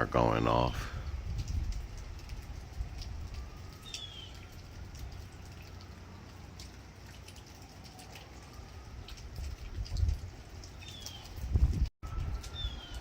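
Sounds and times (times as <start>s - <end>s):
faint sirens wailing: 0.0s - 13.0s
birds chirping: 3.7s - 4.7s, 10.6s - 11.5s, 12.4s - 13.0s.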